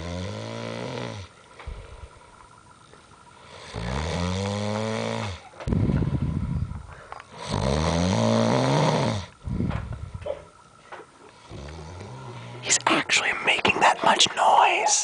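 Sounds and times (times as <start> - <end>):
man snoring loudly: 0.0 - 1.3, 3.5 - 5.5, 7.4 - 9.4, 11.4 - 12.7.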